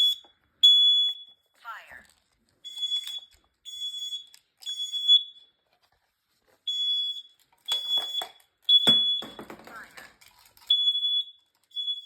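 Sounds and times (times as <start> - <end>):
smoke alarm beeping: 0.0 - 1.6, 2.6 - 5.6, 6.6 - 10.0, 10.7 - 12.0.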